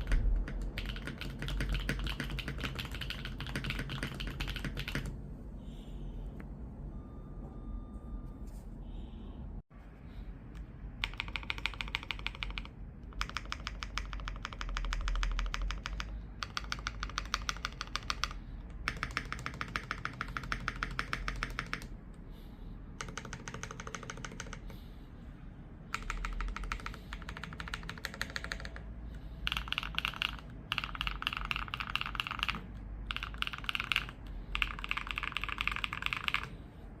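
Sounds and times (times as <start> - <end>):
mechanical keyboard keystroke clacks: 0.0 - 5.1, 11.0 - 21.9, 23.0 - 24.7, 25.9 - 28.8, 29.4 - 36.5.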